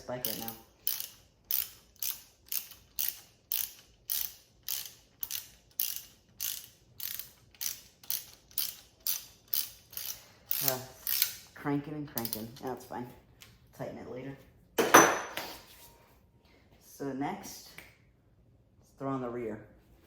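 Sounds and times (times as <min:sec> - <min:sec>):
ratchet wrench clicking: 0:00.0 - 0:11.5, 0:12.2 - 0:12.5.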